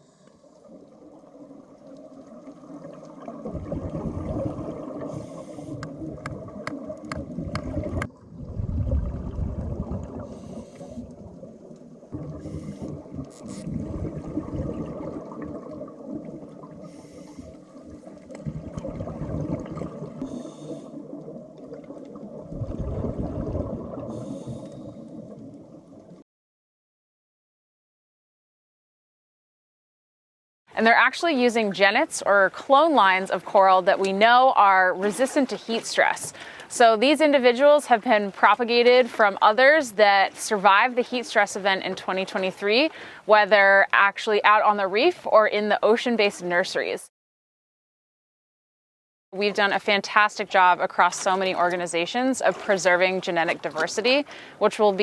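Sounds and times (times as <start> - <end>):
underwater bubbling rumble: 0.6 - 26.2.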